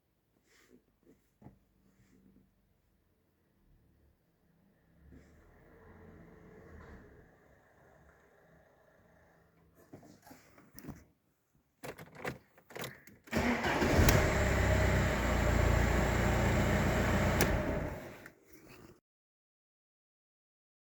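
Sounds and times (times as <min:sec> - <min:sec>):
car engine starting and running: 0:13.3 - 0:18.3.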